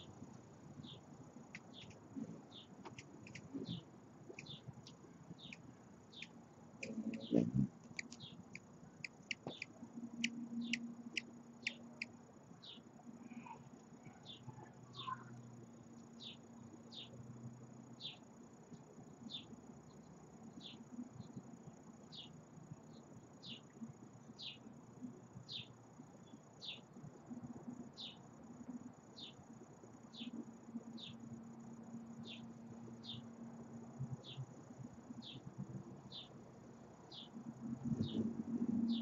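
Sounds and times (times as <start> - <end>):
faint low hum: 0.0 - 39.0
small bird chipping: 0.8 - 12.8.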